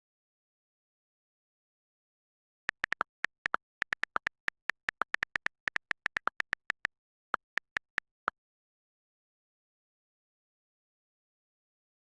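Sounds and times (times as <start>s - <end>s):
short sharp clicks: 2.7s - 8.3s.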